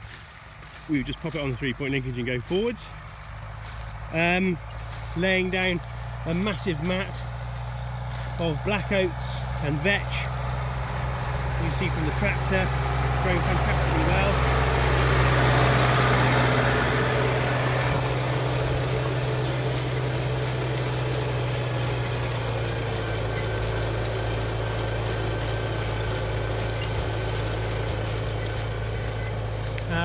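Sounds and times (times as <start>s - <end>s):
tractor engine running: 0.0s - 30.0s.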